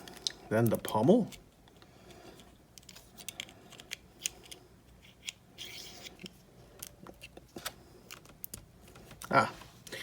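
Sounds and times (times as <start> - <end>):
plastic parts clicking: 2.4 - 5.4.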